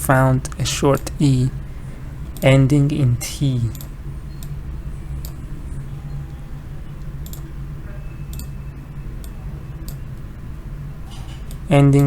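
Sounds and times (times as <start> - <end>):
steady low hum: 0.0 - 12.0
sharp clicks: 0.4 - 1.2, 7.0 - 7.5.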